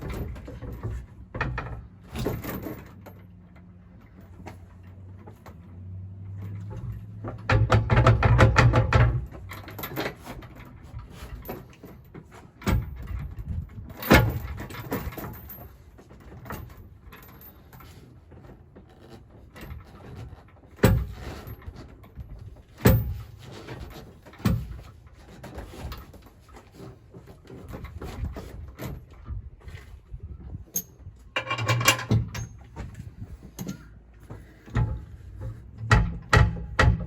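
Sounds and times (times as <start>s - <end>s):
heavy metal knocks and clunks: 0.0s - 3.0s, 6.6s - 15.7s, 19.4s - 26.2s, 30.5s - 37.0s.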